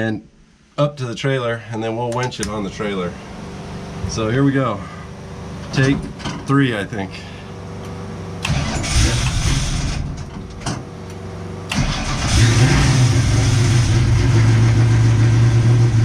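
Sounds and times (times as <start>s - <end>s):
car engine starter cranking: 8.4s - 10.4s, 11.7s - 14.0s.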